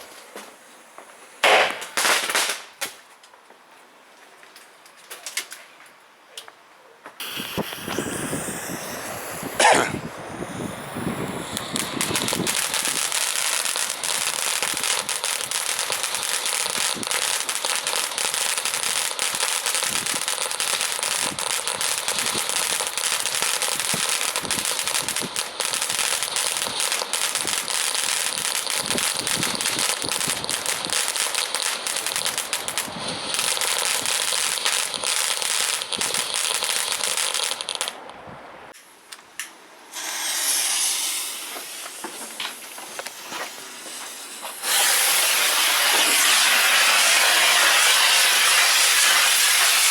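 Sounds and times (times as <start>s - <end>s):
firework fountain crackling: 7.2s - 38.2s, 39.8s - 49.9s.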